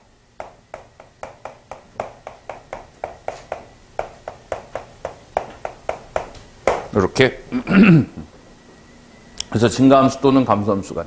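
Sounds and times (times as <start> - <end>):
writing tool tapping board: 0.4 - 6.9.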